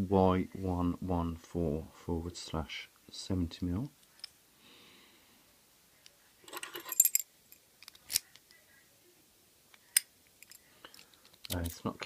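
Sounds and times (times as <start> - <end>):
padlock metallic clicks and rattles: 10.0 - 11.8.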